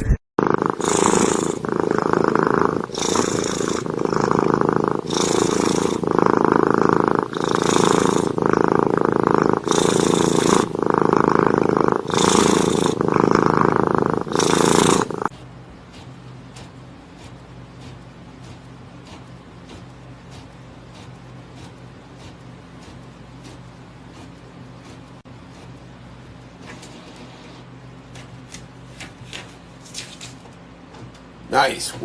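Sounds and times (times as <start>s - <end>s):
cat purring loudly: 0.0s - 15.3s, 15.9s - 26.6s.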